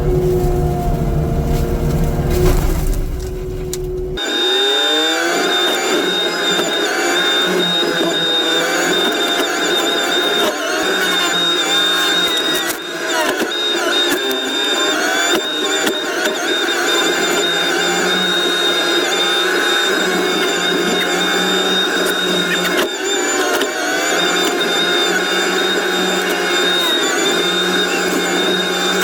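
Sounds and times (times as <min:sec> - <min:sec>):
heavy machinery engine: 0:00.0 - 0:12.3
high machinery whine: 0:00.0 - 0:29.0.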